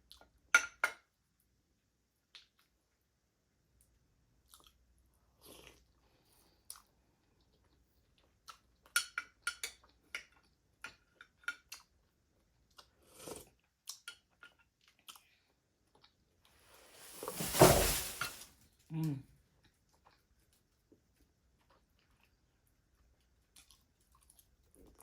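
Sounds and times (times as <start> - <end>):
chewing and lip smacking: 23.5 - 24.4.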